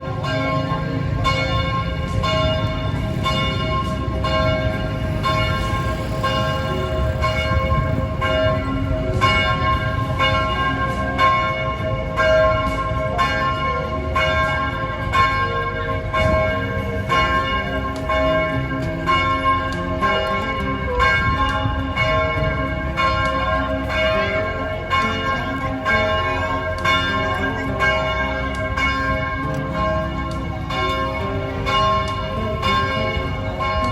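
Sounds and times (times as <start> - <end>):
church bells ringing: 0.0 - 33.9
low rumble: 0.0 - 33.9.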